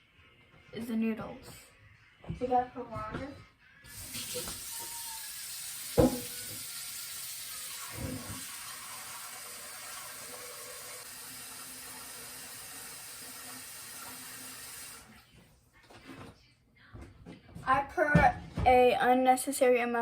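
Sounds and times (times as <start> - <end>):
knocks on pot: 6.0 - 6.6
tap running into pot: 6.0 - 6.6.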